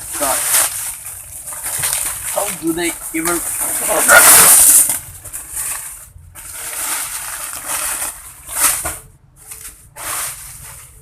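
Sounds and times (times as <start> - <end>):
packaging ripping and crinkling: 0.0 - 8.9.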